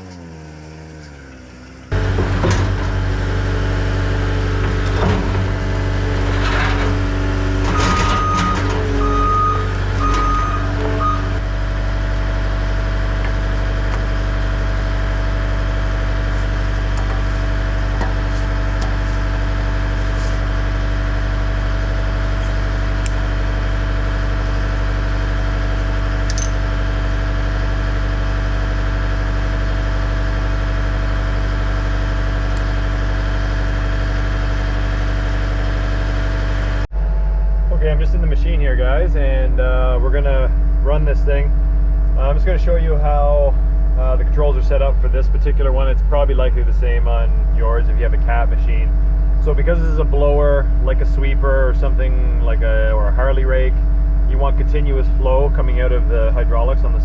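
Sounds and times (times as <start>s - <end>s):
diesel engine running: 0.0s - 57.0s
clatter: 4.6s - 8.9s.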